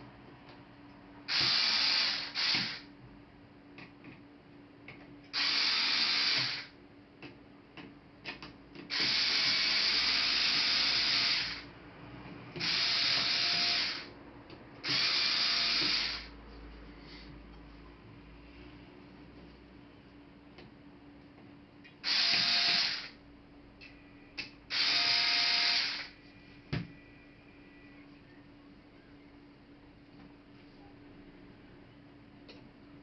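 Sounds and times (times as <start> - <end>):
electric screwdriver running: 1.3 - 2.9, 5.4 - 6.7, 8.9 - 11.7, 12.6 - 14.1, 14.8 - 16.3, 22.0 - 23.2, 24.7 - 26.1.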